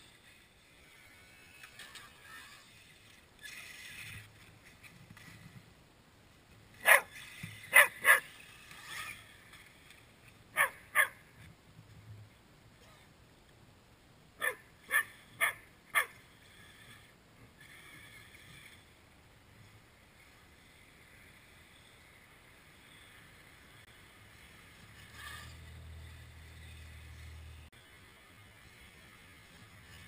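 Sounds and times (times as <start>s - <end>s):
dog barking: 6.8s - 7.1s, 7.7s - 8.3s, 10.6s - 11.2s, 14.4s - 16.1s.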